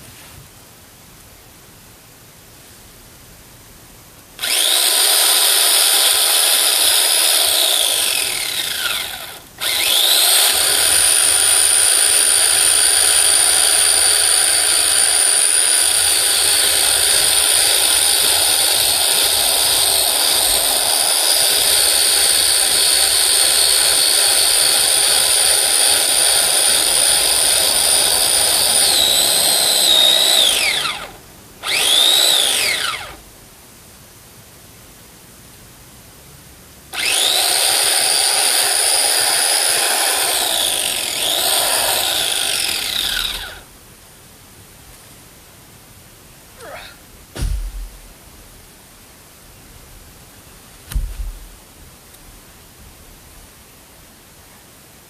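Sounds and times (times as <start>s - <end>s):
electric chainsaw cutting wood: 4.4s - 33.2s, 36.9s - 43.7s.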